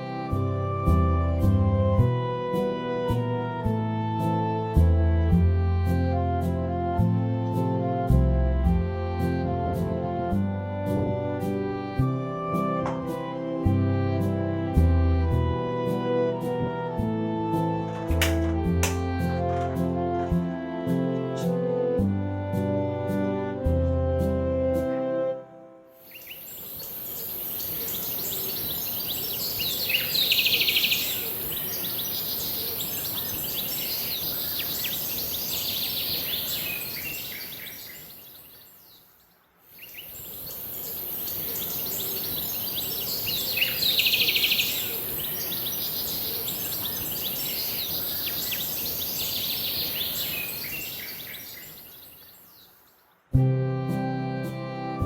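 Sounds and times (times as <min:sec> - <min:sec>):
birds chirping: 0:16.4 - 0:21.8, 0:26.0 - 0:53.4
steady high hiss: 0:25.9 - 0:53.4.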